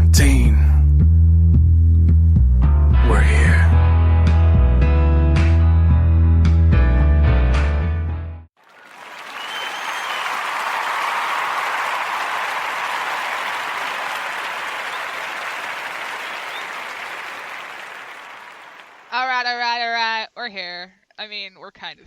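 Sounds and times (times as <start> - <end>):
crowd applauding: 8.6 - 19.2.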